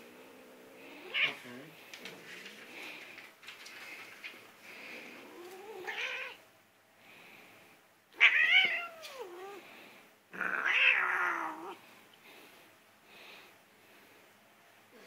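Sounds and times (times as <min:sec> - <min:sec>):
cat yowling: 0:05.6 - 0:06.4, 0:08.2 - 0:09.6, 0:10.4 - 0:11.8.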